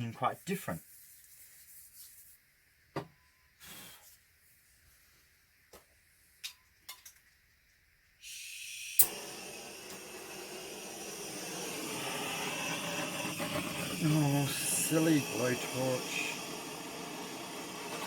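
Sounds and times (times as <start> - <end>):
blowtorch flame rushing: 8.2 - 18.0
gas hissing: 8.2 - 18.0
igniter click: 9.0 - 9.2.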